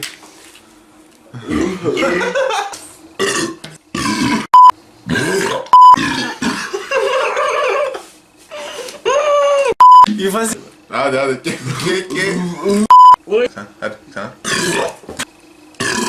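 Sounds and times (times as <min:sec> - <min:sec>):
men burping: 0:01.3 - 0:02.4, 0:03.2 - 0:04.5, 0:05.1 - 0:06.9, 0:11.5 - 0:12.9, 0:14.2 - 0:15.0, 0:15.8 - 0:16.0
loud high beeps: 0:05.8 - 0:06.0, 0:09.8 - 0:10.1, 0:12.9 - 0:13.2.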